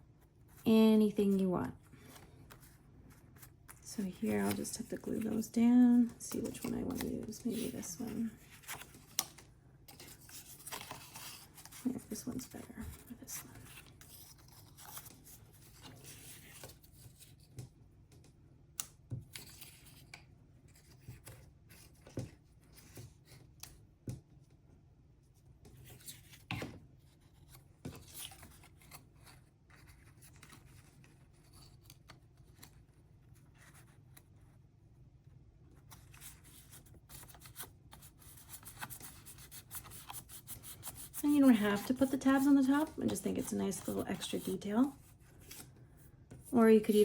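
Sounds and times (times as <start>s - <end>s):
paper rustling: 2.0s - 17.5s.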